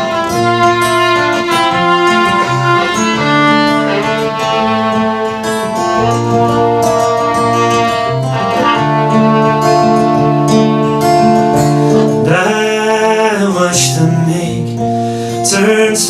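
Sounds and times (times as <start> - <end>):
fiddle playing slow melody: 0.0 - 12.3
acoustic guitar accompaniment: 0.0 - 16.0.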